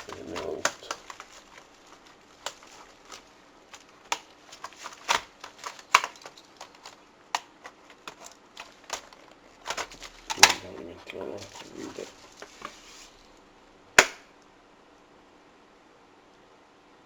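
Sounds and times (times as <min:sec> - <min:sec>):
clicks of plastic laptop parts: 0:00.0 - 0:10.7, 0:14.0 - 0:14.3.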